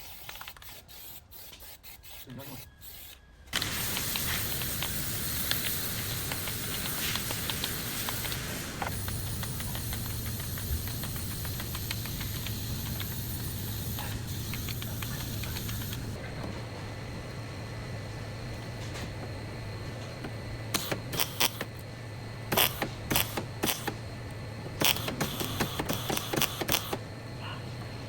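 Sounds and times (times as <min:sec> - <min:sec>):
steady hissing: 0:02.9 - 0:16.2.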